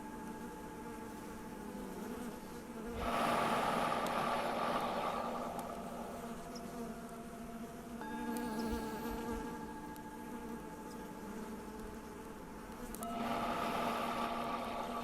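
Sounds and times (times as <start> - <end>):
singing bowl ringing: 0.0 - 1.7, 4.8 - 15.0
bees buzzing: 0.0 - 15.0.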